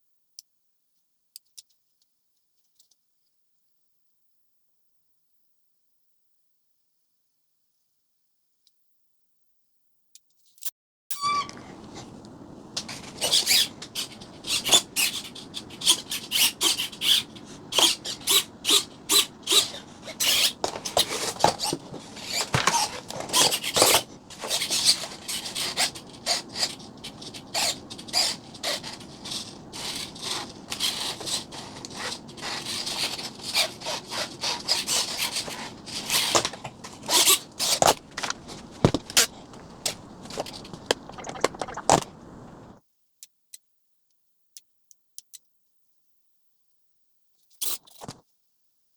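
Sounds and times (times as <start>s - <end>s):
foam parts squeaking: 11.1s - 42.8s
foam parts rubbing and scraping: 11.5s - 42.8s.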